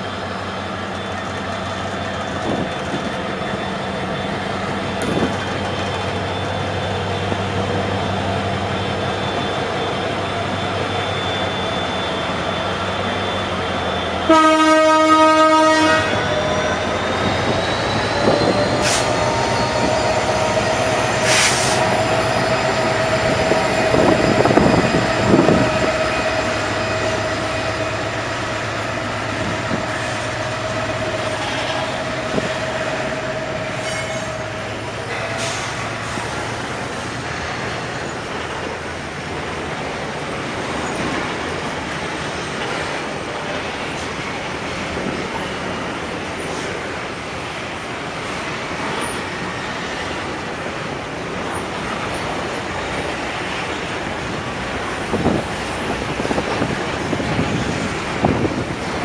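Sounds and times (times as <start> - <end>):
thin steady squeal: 0.0 - 14.3
train rumbling by: 0.0 - 59.0.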